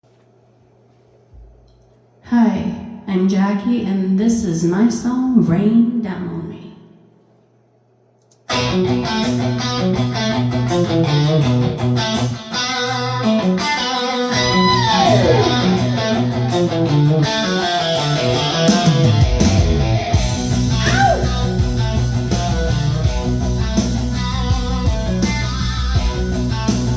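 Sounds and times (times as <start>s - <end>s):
bass: 8.5s - 12.5s, 14.3s - 26.9s
guitar-led instrumental music: 8.5s - 26.9s
falling swoop: 14.6s - 16.0s.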